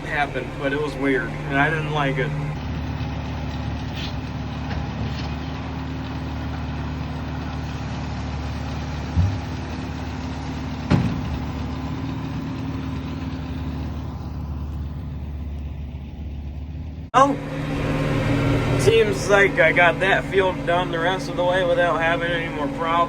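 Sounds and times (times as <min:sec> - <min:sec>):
tractor engine running: 0:00.0 - 0:23.0
low thump: 0:09.1 - 0:09.7, 0:10.9 - 0:11.6.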